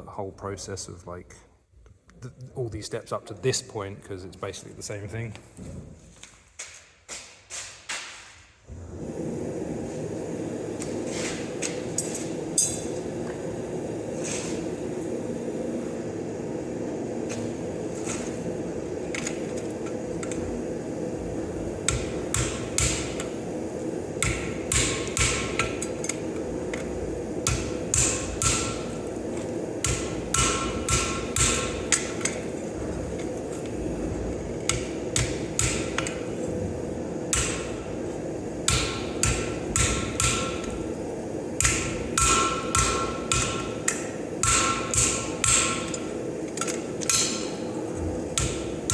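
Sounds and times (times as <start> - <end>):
hammer blows on hot steel: 21.9 - 23.4, 24.2 - 26.1, 27.4 - 29.1, 29.8 - 32.3, 34.7 - 36.3, 37.3 - 37.9, 38.7 - 40.8, 41.6 - 46.1.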